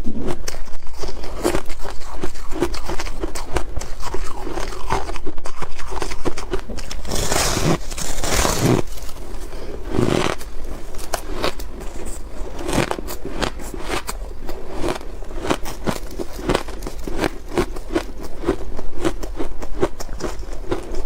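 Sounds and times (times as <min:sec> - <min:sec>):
ice being chewed: 0:00.0 - 0:21.0.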